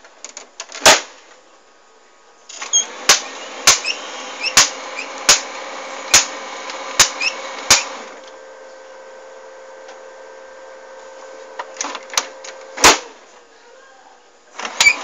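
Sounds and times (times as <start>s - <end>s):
printer humming: 2.2s - 13.4s
printer knocking: 2.8s - 8.1s.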